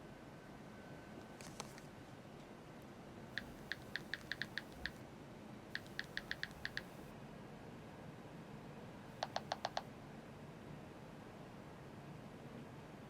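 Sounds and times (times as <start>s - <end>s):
keyboard key taps: 3.4s - 5.0s, 5.8s - 7.0s, 9.2s - 9.8s.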